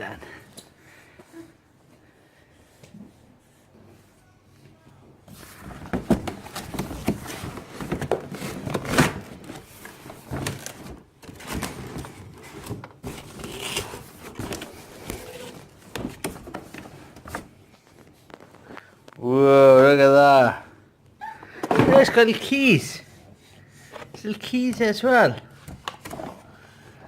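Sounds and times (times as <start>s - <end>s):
packaging rustling: 5.3s - 19.2s.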